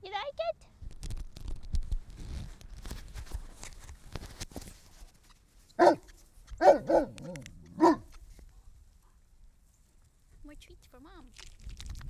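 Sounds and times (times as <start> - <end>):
faint rustling and clicks: 0.8 - 8.6
dog barking: 5.8 - 8.1.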